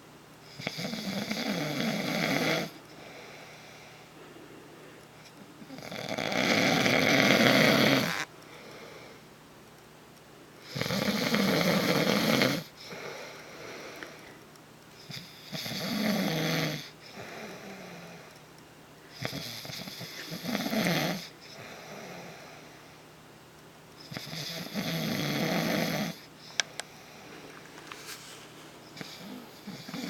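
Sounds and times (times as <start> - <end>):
man snoring: 0.5 - 2.8, 5.6 - 8.3, 10.6 - 14.0, 15.0 - 18.2, 19.1 - 22.6, 24.0 - 26.3, 29.0 - 30.0
quiet breaths: 1.9 - 6.2, 8.1 - 9.4, 11.7 - 16.0, 16.8 - 23.2, 23.9 - 30.0.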